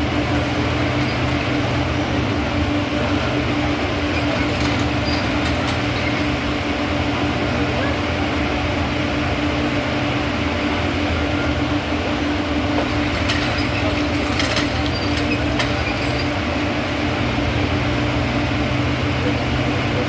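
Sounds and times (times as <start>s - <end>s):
rail machinery engine drone: 0.0s - 20.0s.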